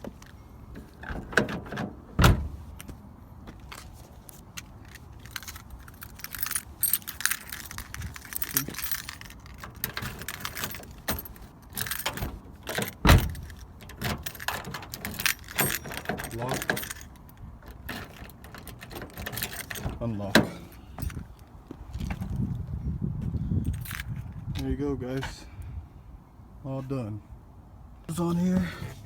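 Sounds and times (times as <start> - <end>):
keys jangling: 4.6 - 21.3.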